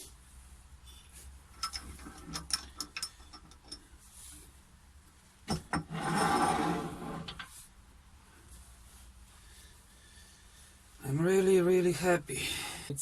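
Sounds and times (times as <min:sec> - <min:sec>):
small sharp clicks and knocks: 0:01.5 - 0:03.9
rough rattling scrape: 0:05.5 - 0:07.6.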